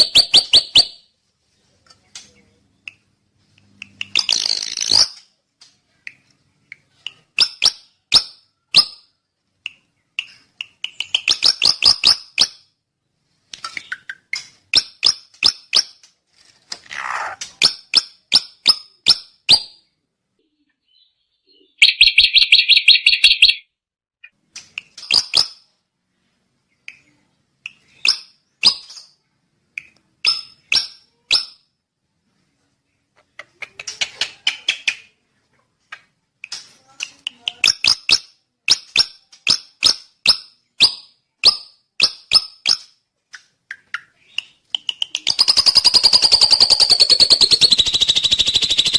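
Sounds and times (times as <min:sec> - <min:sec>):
bird chips and clicks: 0:00.0 - 0:01.0, 0:01.8 - 0:12.6, 0:13.5 - 0:19.8, 0:21.6 - 0:23.7, 0:24.5 - 0:25.8, 0:33.1 - 0:35.2, 0:35.9 - 0:48.9.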